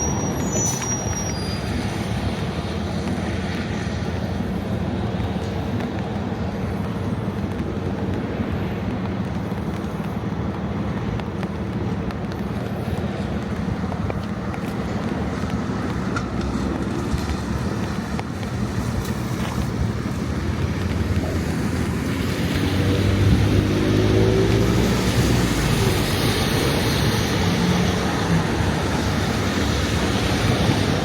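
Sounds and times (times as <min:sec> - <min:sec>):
passing road traffic: 0:00.0 - 0:31.0
wind on microphone: 0:00.0 - 0:31.0
vehicle engine revving: 0:14.2 - 0:31.0.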